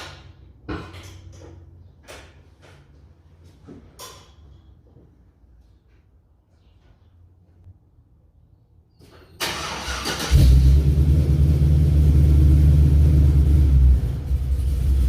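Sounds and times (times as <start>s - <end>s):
engine running with low rumble: 10.2s - 15.0s.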